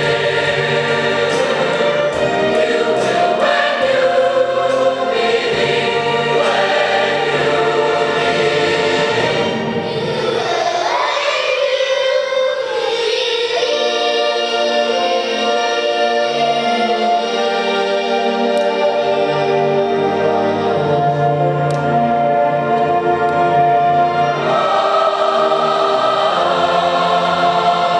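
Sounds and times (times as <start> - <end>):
choir singing held chords: 0.0 - 27.9
voice gliding upward: 9.8 - 17.9.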